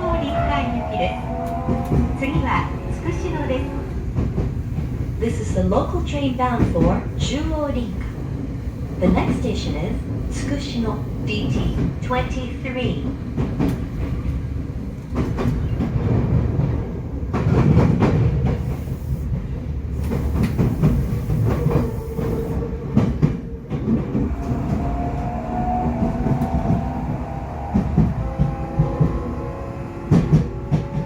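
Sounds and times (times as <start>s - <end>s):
train wheels rumbling on rails: 0.0s - 31.0s
clacks over rail joints: 11.5s - 18.6s.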